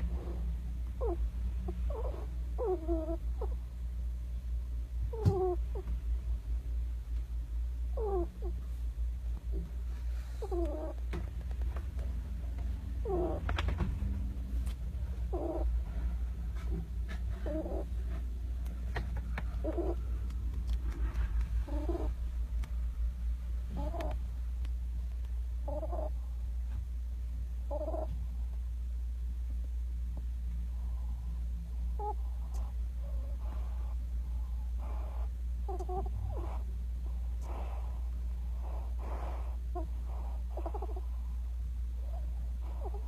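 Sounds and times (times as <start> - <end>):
hedgehog snoring squeakily: 0.0 - 3.6, 5.1 - 5.8, 7.9 - 8.6, 10.4 - 11.0, 13.0 - 13.5, 15.3 - 15.8, 17.4 - 17.9, 19.6 - 20.0, 21.6 - 22.2, 23.7 - 24.2, 25.6 - 26.2, 27.7 - 28.1, 31.9 - 41.3, 42.0 - 43.0.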